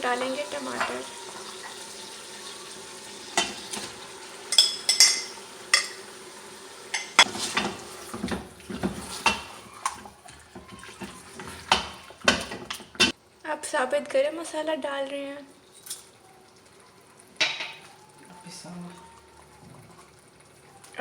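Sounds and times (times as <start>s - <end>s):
spoon scraping a pressure cooker: 0.0s - 6.1s, 6.9s - 13.2s
low sizzle: 0.0s - 21.0s.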